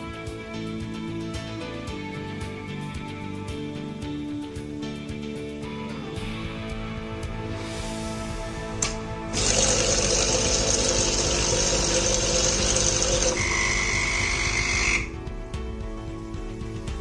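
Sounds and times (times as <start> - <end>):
espresso machine hissing and buzzing: 8.8 - 15.2.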